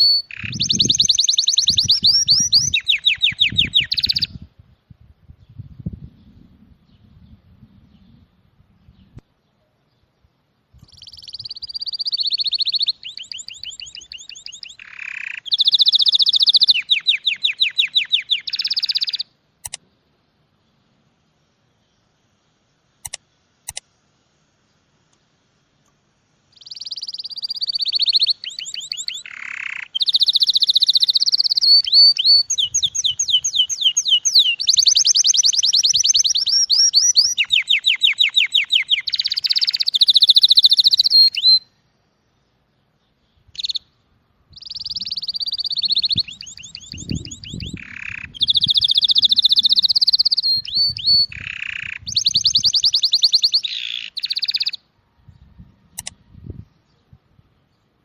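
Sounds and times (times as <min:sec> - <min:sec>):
songbird trilling: 0:00.0 - 0:04.5, 0:10.8 - 0:19.8, 0:26.5 - 0:41.8, 0:43.0 - 0:57.2.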